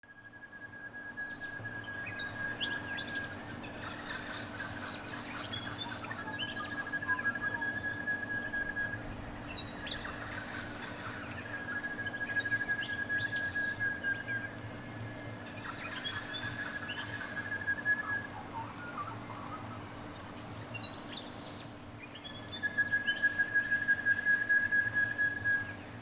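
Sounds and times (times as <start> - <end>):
long whistled bird notes: 0.1 - 14.5, 15.4 - 20.0
bird chirps: 0.8 - 8.8.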